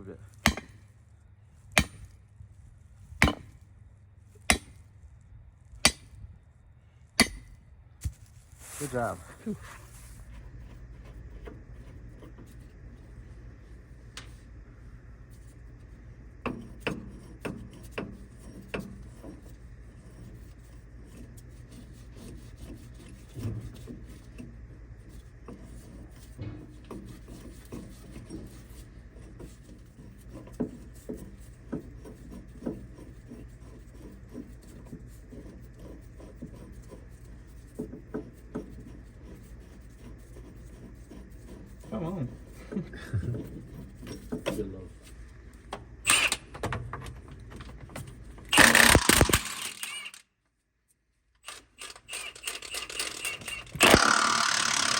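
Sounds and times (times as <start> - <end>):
tools clinking and scraping metal: 42.6 - 45.0, 47.6 - 50.2, 51.4 - 54.9.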